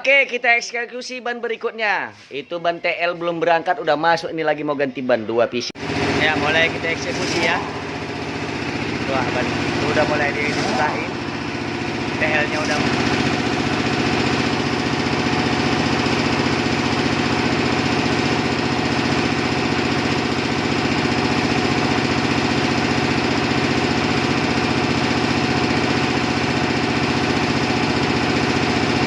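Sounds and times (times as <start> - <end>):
engine running steadily: 5.8 - 29.0.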